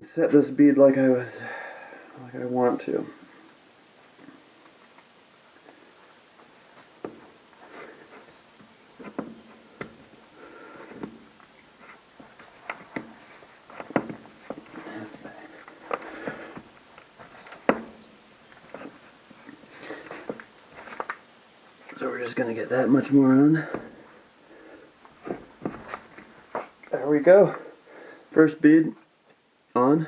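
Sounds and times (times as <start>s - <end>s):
rubber rubbing: 9.0s - 18.0s, 18.6s - 21.3s, 25.1s - 26.8s.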